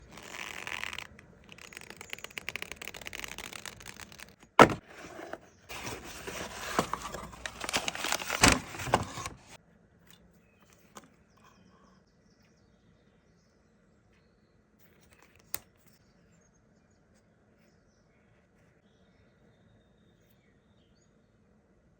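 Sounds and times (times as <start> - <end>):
leather rustling and creaking: 0.0 - 9.6.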